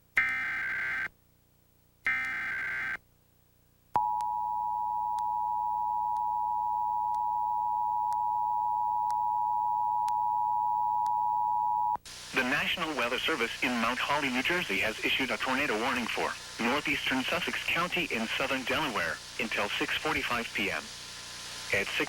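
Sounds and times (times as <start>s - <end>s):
harsh digital data warble: 12.3s - 20.9s.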